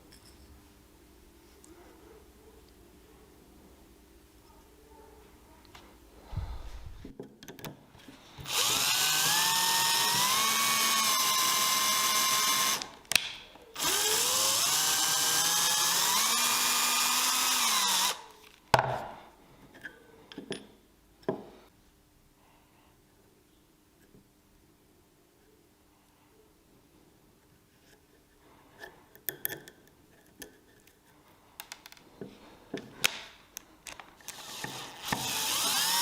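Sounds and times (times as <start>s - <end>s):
electric drill whining: 8.4s - 13.0s, 13.8s - 18.3s, 34.2s - 36.0s.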